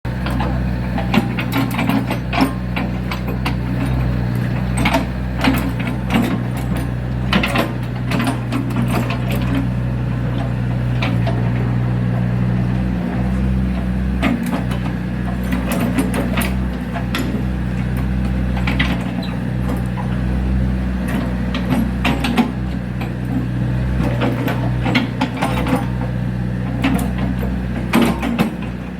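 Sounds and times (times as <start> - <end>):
excavator diesel engine running: 0.0 - 28.9.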